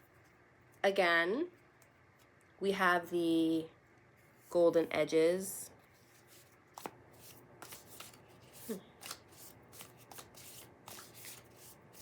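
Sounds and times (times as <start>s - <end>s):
cards being shuffled: 5.9s - 12.0s.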